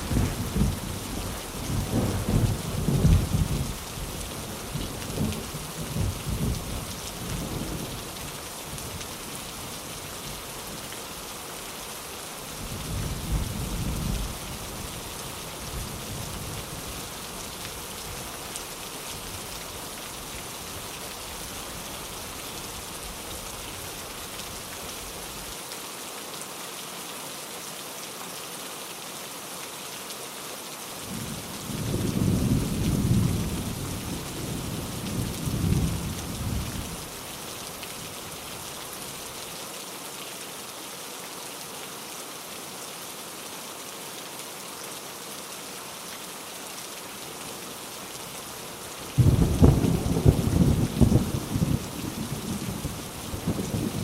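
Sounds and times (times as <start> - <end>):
thunder rumbling: 0.0 - 3.8, 49.2 - 54.0
heavy rain: 0.0 - 54.0.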